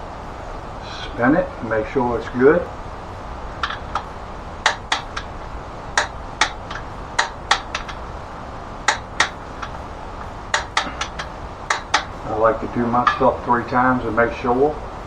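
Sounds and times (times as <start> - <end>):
sharp metallic clicks: 3.6 - 13.7.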